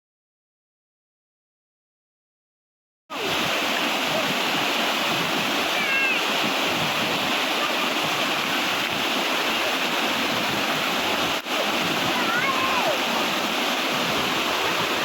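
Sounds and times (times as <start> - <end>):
waterfall rushing: 3.1 - 15.0.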